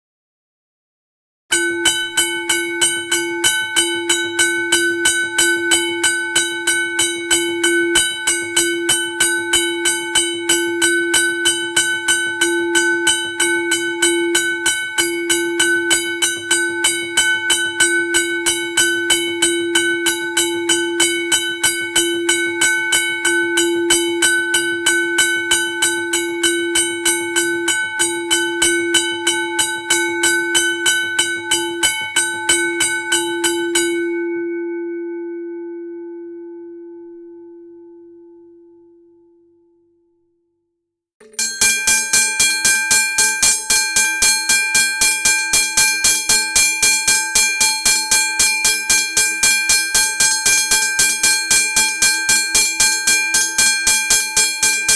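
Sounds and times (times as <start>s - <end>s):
level crossing bell ringing: 41.2s - 54.9s.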